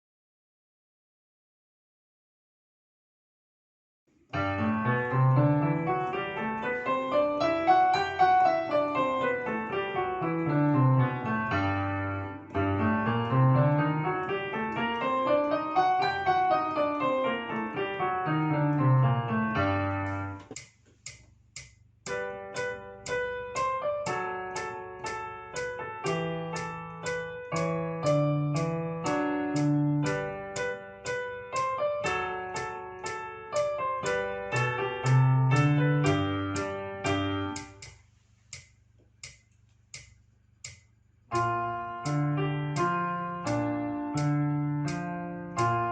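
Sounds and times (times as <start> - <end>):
piano music: 4.4 - 20.6, 22.1 - 37.8, 41.3 - 45.9
steady ticking beat: 12.5 - 45.9.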